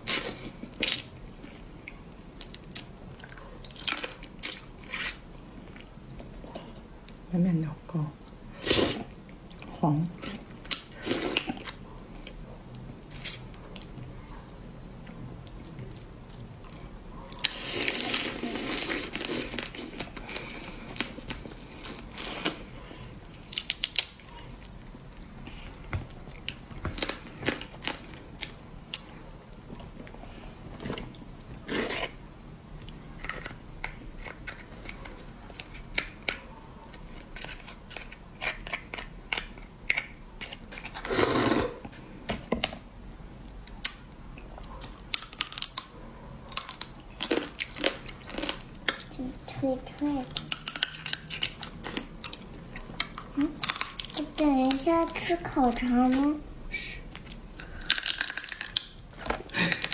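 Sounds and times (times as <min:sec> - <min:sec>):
crunching and chewing crab shell: 0:00.0 - 0:07.2, 0:23.3 - 0:30.2, 0:32.9 - 0:41.1, 0:43.7 - 0:49.1, 0:50.3 - 0:54.4, 0:57.1 - 0:59.9.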